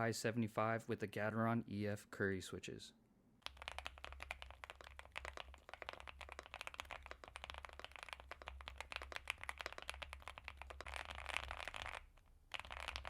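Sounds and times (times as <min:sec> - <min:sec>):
fast typing on mechanical keyboard: 0:03.4 - 0:13.0.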